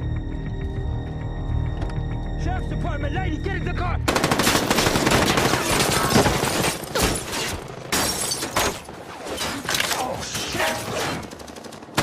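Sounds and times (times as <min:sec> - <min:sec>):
automatic gunfire: 0:04.1 - 0:06.3.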